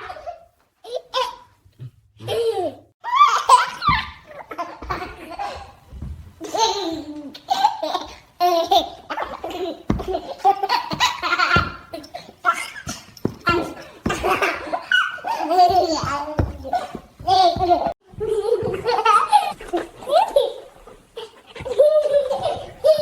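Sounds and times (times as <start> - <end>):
baby laughing: 6.4 - 23.0.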